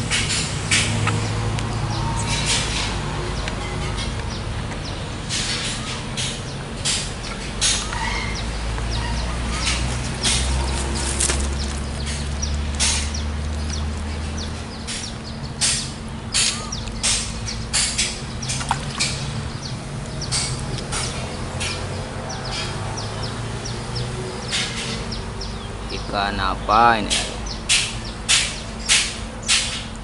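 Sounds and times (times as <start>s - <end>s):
birds chirping: 0.0s - 30.0s
crackling or rustling noises: 9.6s - 15.8s.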